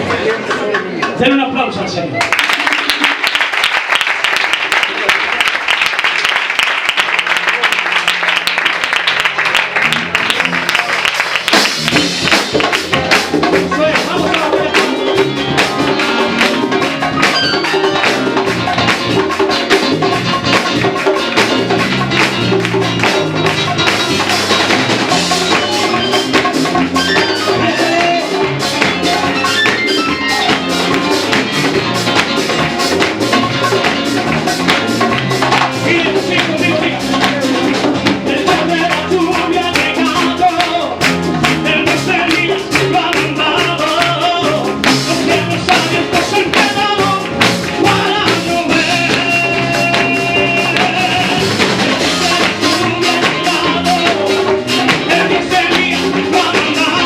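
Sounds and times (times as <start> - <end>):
latin-style worship band: 0.0 - 57.0
congregation applauding: 2.1 - 41.7.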